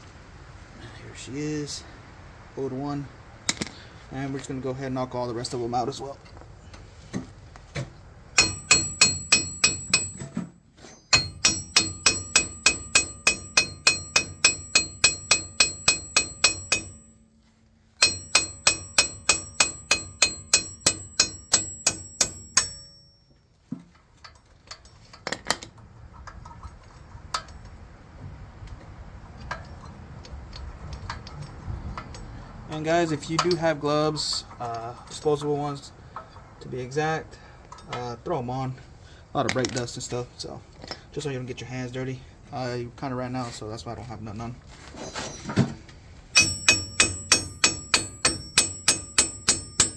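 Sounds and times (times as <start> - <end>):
hammer striking metal studs: 7.1 - 24.0, 46.3 - 49.9.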